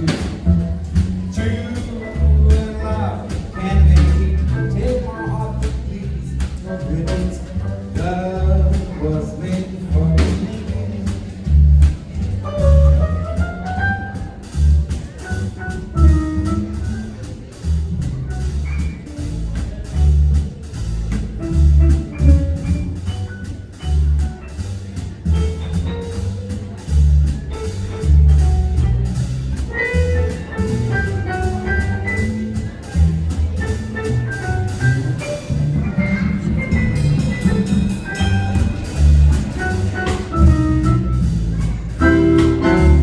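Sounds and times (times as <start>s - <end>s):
pulsing bass line: 0.0s - 43.0s
steady drum beat: 0.0s - 43.0s
wandering melody line: 33.4s - 41.4s.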